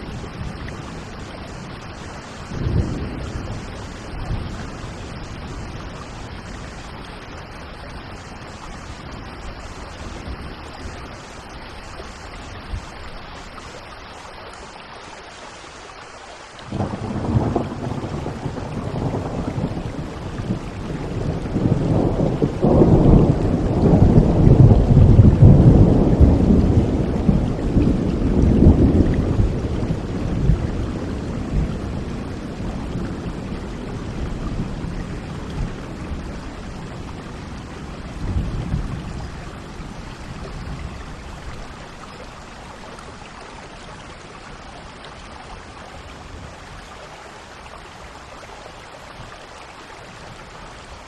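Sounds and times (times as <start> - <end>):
steady rain: 0.0 - 51.0
rolling thunder rumble: 16.7 - 41.9.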